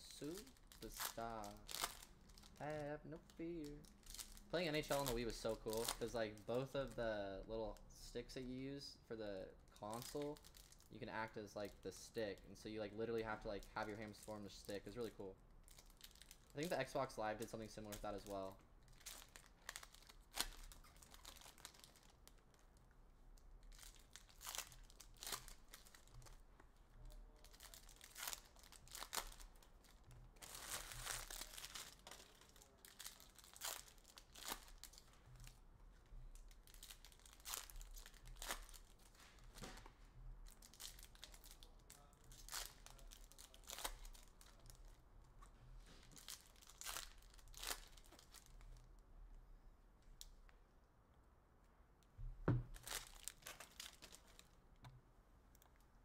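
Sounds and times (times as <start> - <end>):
wrappers crinkling and tearing: 0.0 - 7.0, 9.7 - 22.8, 23.4 - 35.6, 36.3 - 48.9, 52.7 - 54.6
card snaps and rustles: 52.7 - 54.5.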